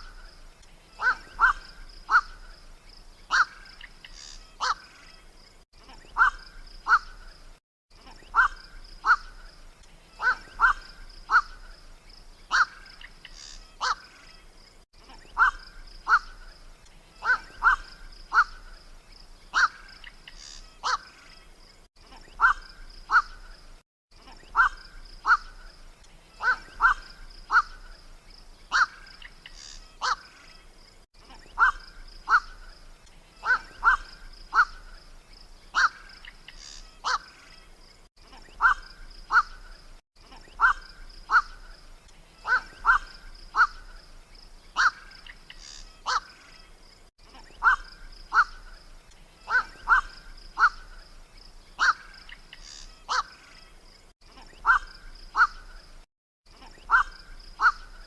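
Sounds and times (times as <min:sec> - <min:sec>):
heron calls played back: 0:00.9 - 0:02.4, 0:03.3 - 0:04.9, 0:06.0 - 0:07.2, 0:08.2 - 0:09.4, 0:10.1 - 0:11.7, 0:12.5 - 0:14.1, 0:15.2 - 0:16.5, 0:17.2 - 0:18.7, 0:19.5 - 0:21.2, 0:22.3 - 0:23.5, 0:24.4 - 0:25.7, 0:26.4 - 0:27.9, 0:28.7 - 0:30.3, 0:33.4 - 0:35.0, 0:35.7 - 0:37.4, 0:38.5 - 0:39.7, 0:40.5 - 0:44.0, 0:44.8 - 0:46.4, 0:47.5 - 0:48.8, 0:49.4 - 0:51.0, 0:51.8 - 0:53.4, 0:54.5 - 0:55.7, 0:56.8 - 0:58.0.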